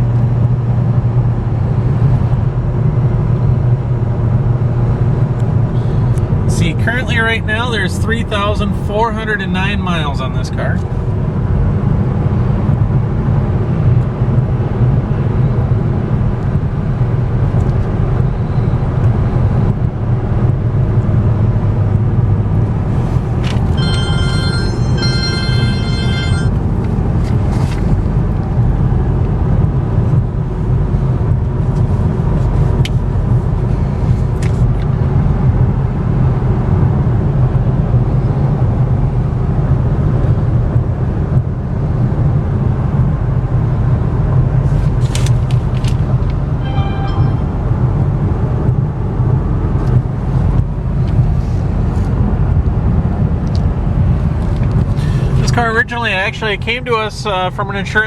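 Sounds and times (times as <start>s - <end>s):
car road and tyre noise: 0.0s - 58.0s
high electronic chime: 23.8s - 26.6s, 46.6s - 48.0s.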